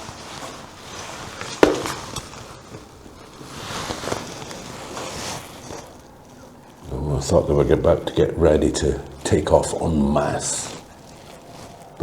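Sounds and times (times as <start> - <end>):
sharp knock: 1.6 - 2.2
waterfowl splashing water: 1.6 - 2.2.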